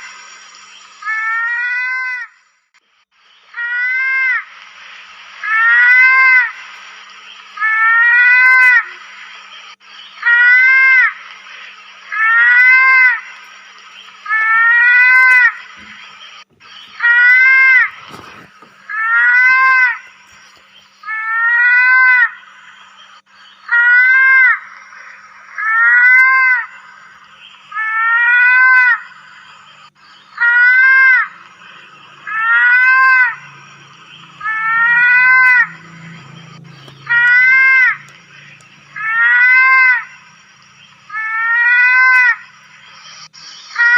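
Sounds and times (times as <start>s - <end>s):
mouse-deer mewing cries: 32.3s - 33.4s, 34.4s - 35.7s, 37.0s - 38.0s, 39.0s - 40.1s, 41.1s - 42.4s.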